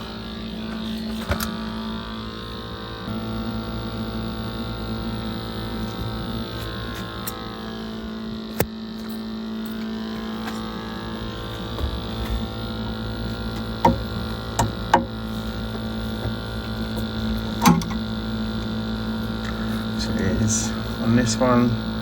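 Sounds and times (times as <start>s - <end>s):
gas boiler humming: 0.0s - 22.0s.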